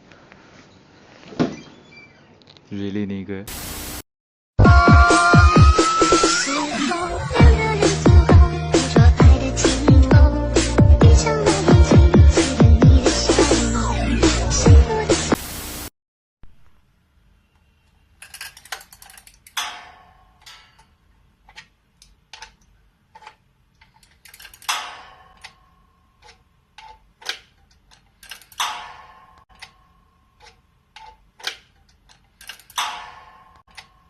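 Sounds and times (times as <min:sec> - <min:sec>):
sharp clicks and knocks: 0:26.2 - 0:29.8, 0:30.4 - 0:34.0.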